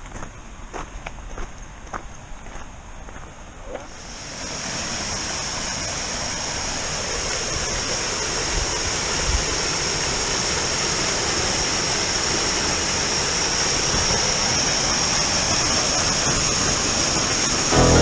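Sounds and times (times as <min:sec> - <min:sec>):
waterfall rushing: 0:04.0 - 0:18.0.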